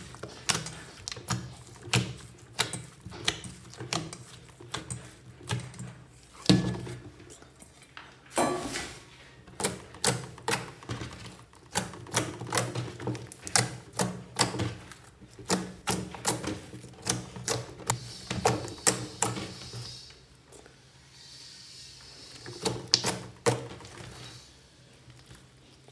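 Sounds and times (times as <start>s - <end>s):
slime squishing with wet clicks: 0.0s - 7.4s, 9.5s - 19.4s.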